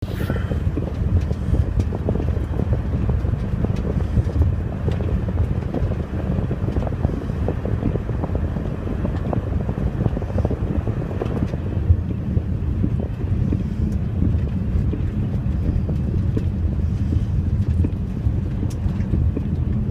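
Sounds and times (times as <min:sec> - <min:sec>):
wind buffeting microphone: 0:00.0 - 0:19.9
light ticks: 0:13.0 - 0:19.9.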